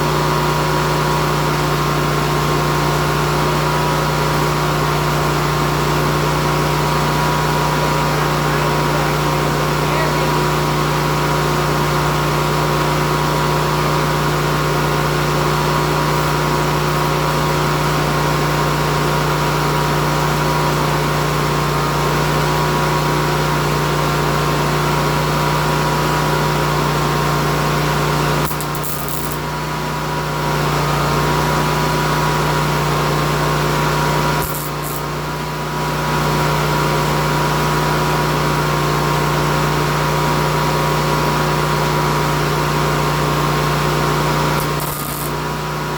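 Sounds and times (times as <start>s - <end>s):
machine humming: 4.9s - 18.8s, 28.0s - 29.5s, 34.1s - 35.2s, 43.1s - 45.9s.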